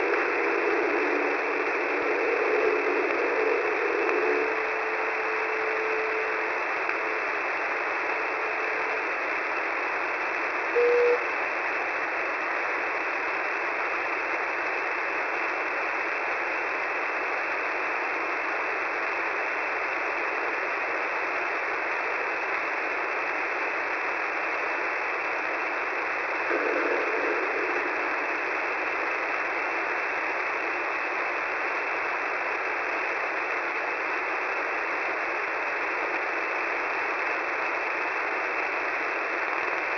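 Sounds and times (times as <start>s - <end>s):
faint steady tone: 0.0s - 11.4s
radio static hiss: 0.0s - 39.9s
short beep: 10.8s - 11.2s
burst of radio noise: 26.2s - 30.2s.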